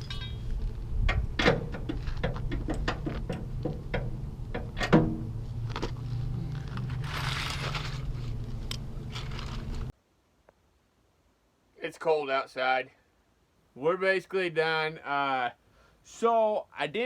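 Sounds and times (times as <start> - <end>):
metal tools clinking on bolts: 0.0 - 0.5
steady low hum: 0.0 - 9.9.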